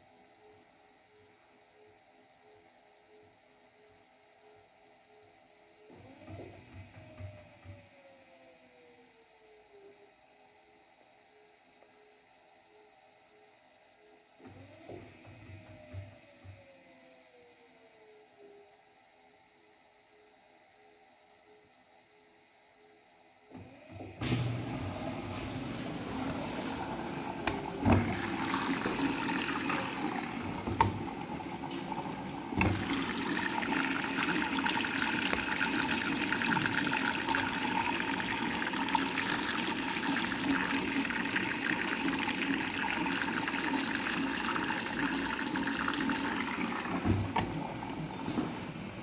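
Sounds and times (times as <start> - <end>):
water rushing in washing machine: 6.0 - 8.0, 14.4 - 16.7, 23.6 - 49.0.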